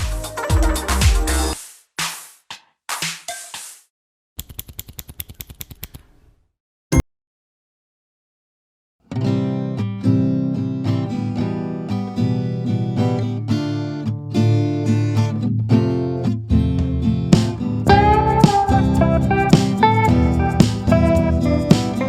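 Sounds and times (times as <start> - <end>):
acoustic guitar music: 9.0 - 22.0.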